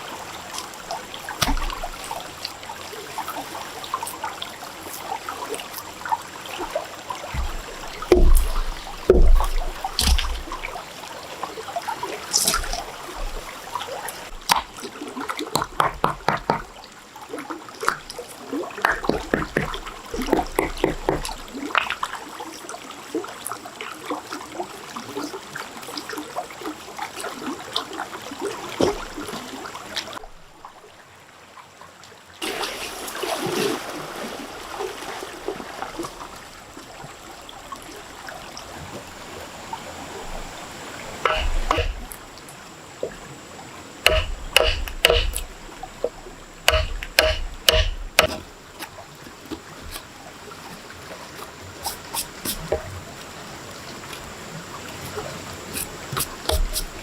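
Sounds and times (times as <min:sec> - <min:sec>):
water trickling and splashing: 0:00.0 - 0:57.0
sharp knocks of hard object: 0:08.1 - 0:10.4, 0:18.9 - 0:21.4, 0:41.3 - 0:42.1, 0:44.1 - 0:45.5, 0:46.7 - 0:48.4.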